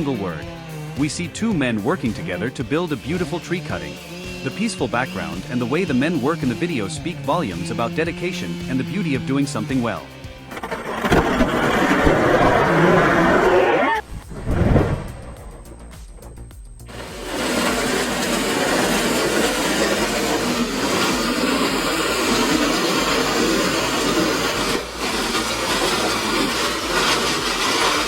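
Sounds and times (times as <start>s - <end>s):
wood chipper grinding: 0.0s - 15.4s, 16.9s - 28.0s.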